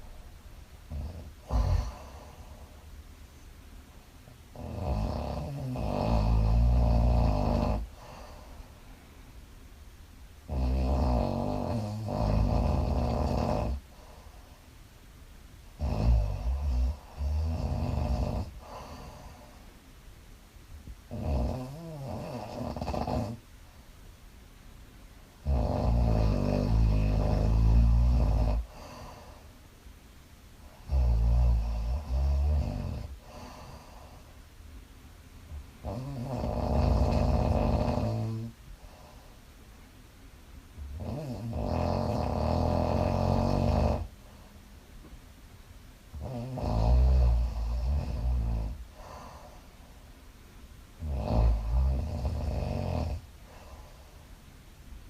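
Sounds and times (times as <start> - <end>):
quiet breaths: 0.0 - 55.0
woman snoring: 0.9 - 2.8, 4.5 - 8.6, 10.5 - 13.9, 15.8 - 19.6, 21.1 - 23.4, 25.4 - 29.4, 30.7 - 34.2, 35.8 - 38.6, 40.9 - 44.1, 46.2 - 49.7, 51.0 - 53.8.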